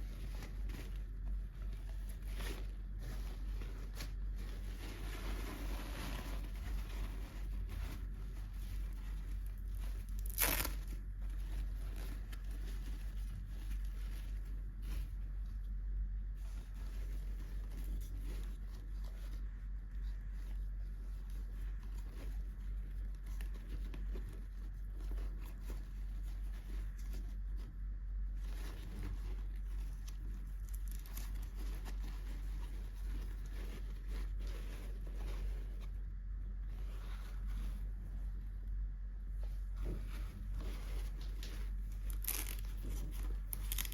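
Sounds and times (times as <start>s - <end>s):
wrapper rustling and crinkling: 0.0s - 15.6s, 16.3s - 38.4s, 39.6s - 43.9s
steady low hum: 0.0s - 43.9s
packaging tearing: 10.2s - 10.8s, 42.1s - 42.7s, 43.5s - 43.9s
toy packaging rustling and tapping: 41.2s - 43.9s.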